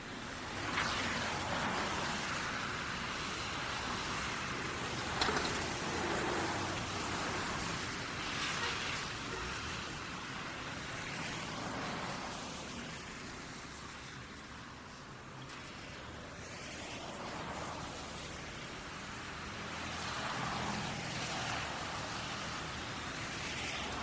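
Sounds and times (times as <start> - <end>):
road traffic rushing: 0.0 - 24.0.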